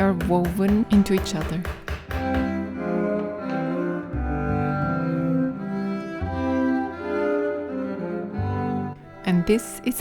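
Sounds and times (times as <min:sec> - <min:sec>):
sustained cello notes: 0:02.3 - 0:10.0.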